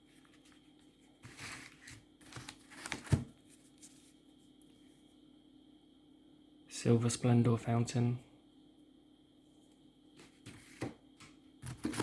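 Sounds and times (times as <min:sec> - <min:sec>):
packaging rustling: 0:01.2 - 0:04.0, 0:11.6 - 0:12.0.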